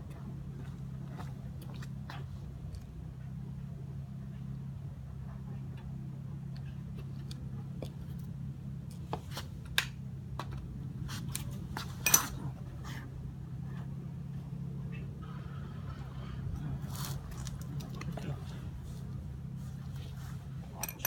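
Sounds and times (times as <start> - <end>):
steady low hum: 0.0 - 21.0
small parts clicking and clinking: 20.8 - 21.0.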